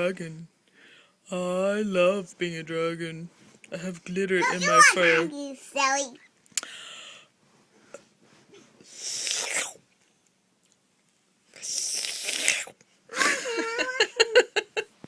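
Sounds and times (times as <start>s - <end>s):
child spluttering laughter: 13.1s - 14.2s.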